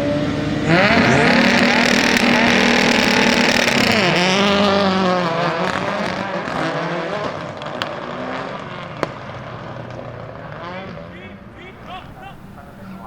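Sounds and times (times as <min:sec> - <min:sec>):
rally car engine revving: 0:00.0 - 0:13.0.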